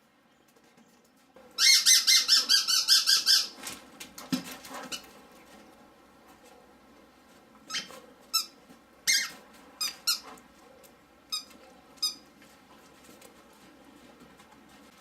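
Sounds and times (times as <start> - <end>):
squeaky dog toy: 1.6 - 3.6, 7.7 - 10.3, 11.3 - 12.2.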